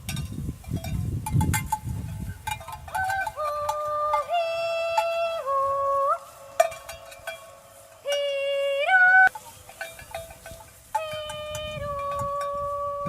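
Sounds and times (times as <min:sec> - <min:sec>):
slow folk melody: 0:02.9 - 0:13.0.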